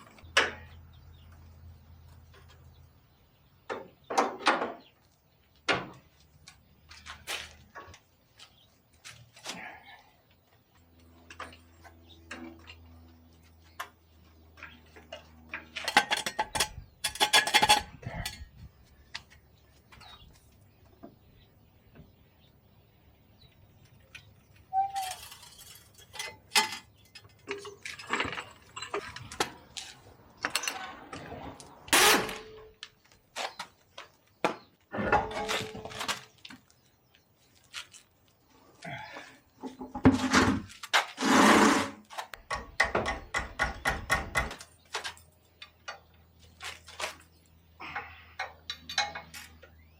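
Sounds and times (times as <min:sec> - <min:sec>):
metal tools clinking: 0:24.7 - 0:31.0, 0:48.4 - 0:49.7.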